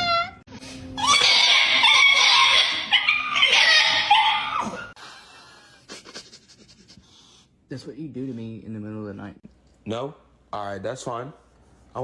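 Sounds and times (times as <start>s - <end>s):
dog crying loudly: 0.0s - 5.0s.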